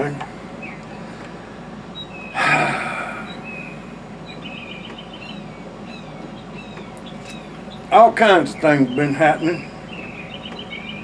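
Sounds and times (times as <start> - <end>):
man exhaling: 2.4 - 3.6
songbird chirps: 3.3 - 11.0.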